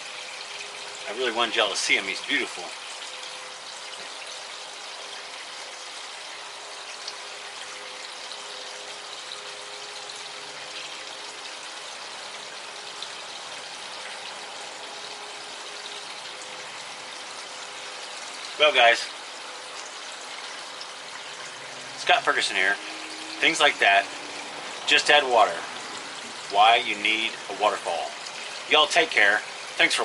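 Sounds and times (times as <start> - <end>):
waterfall splashing over rocks: 17.6 - 30.0.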